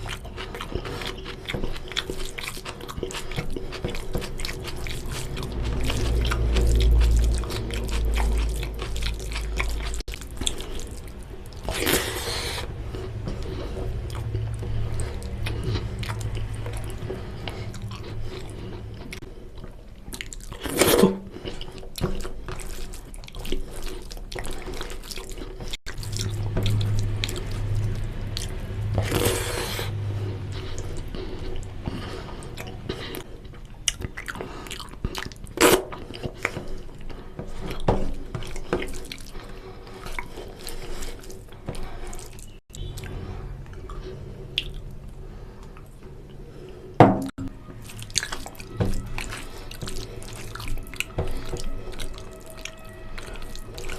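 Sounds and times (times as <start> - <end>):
wet slurps: 0.0 - 19.4, 47.8 - 53.9
steady low hum: 0.0 - 20.1, 25.4 - 33.8
wet chewing: 0.0 - 53.9.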